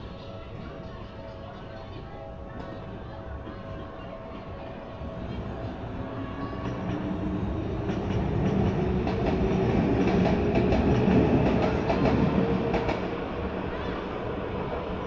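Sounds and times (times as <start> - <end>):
electric train passing: 4.4 - 15.0.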